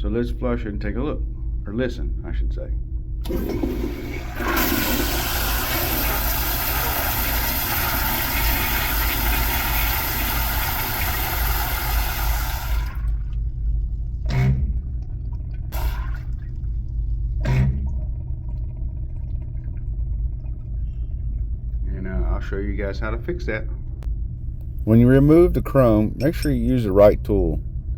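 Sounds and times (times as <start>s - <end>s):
toilet flushing rush of water: 3.2s - 13.3s, 15.6s - 20.3s
low rumble: 13.0s - 27.9s.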